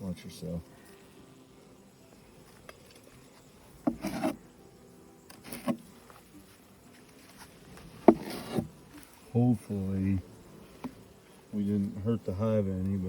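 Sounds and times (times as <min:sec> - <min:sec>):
wooden frames scraping: 0:03.8 - 0:04.4, 0:05.3 - 0:05.9, 0:07.3 - 0:08.8.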